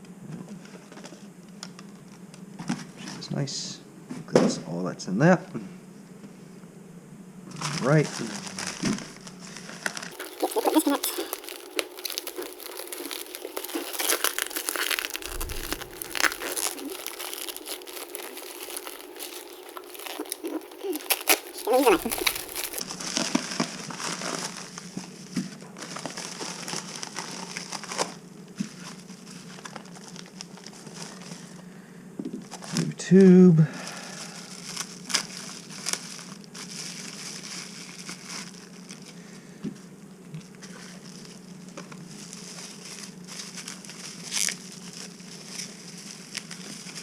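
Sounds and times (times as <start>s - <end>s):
plastic packaging crinkling: 10.1s - 22.8s
steady low hum: 11.3s - 22.8s.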